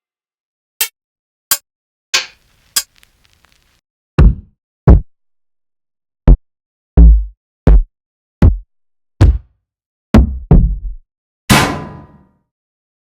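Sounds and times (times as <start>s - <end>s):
kick drum hits: 4.2s - 5.1s, 7.0s - 9.5s, 10.2s - 11.7s.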